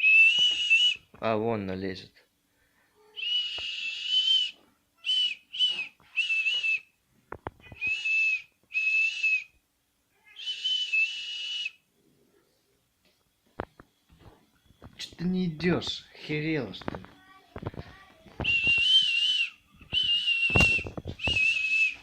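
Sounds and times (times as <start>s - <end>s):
person whistling: 0.0s - 1.0s, 3.2s - 6.9s, 7.8s - 9.5s, 10.4s - 11.8s, 18.4s - 22.0s.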